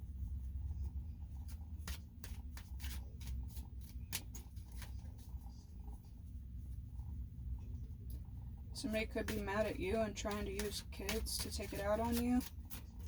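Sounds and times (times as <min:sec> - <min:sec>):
low steady hum: 0:00.0 - 0:13.0
cards being shuffled: 0:01.8 - 0:05.2, 0:08.9 - 0:13.0.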